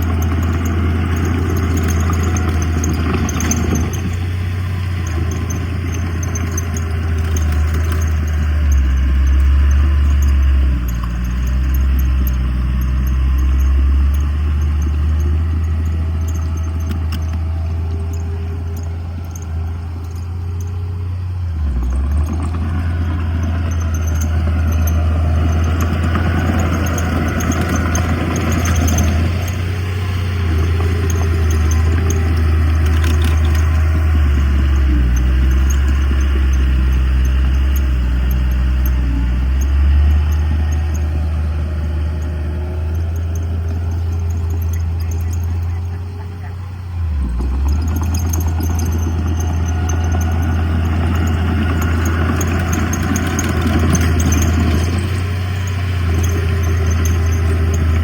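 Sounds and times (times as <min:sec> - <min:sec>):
diesel engine running under load: 0:00.0 - 0:58.0
machinery clatter: 0:00.0 - 0:58.0.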